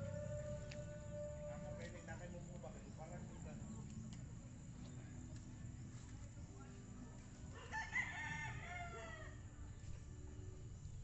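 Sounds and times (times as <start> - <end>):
rooster crowing: 0.0 - 1.8, 7.6 - 9.4.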